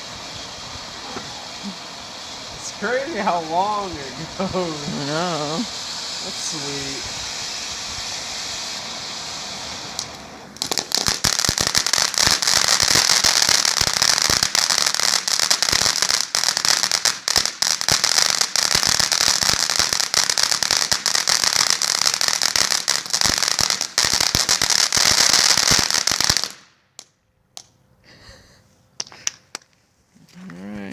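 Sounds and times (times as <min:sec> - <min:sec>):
firework hissing: 0:00.0 - 0:26.8
firework crackling: 0:00.0 - 0:30.9
firework pops: 0:01.0 - 0:01.5, 0:09.8 - 0:21.6, 0:22.5 - 0:27.8, 0:29.0 - 0:29.8.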